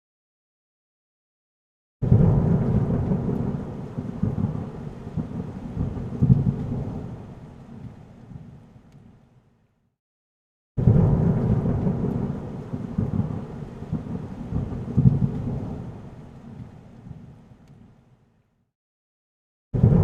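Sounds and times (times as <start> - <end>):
heavy storm rain: 2.0 - 8.8, 10.8 - 17.7, 19.8 - 20.0.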